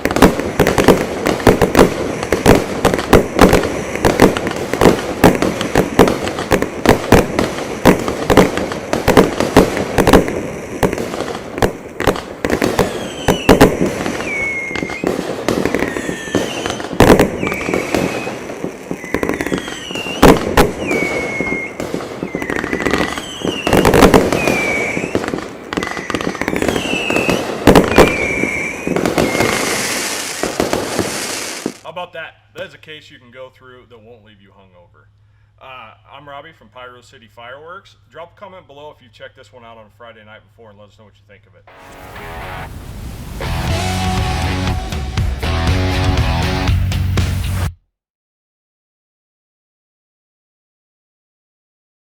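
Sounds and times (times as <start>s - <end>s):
firework cakes firing shots: 0.0s - 31.8s
falling firework whistles: 12.6s - 31.8s, 41.8s - 45.3s.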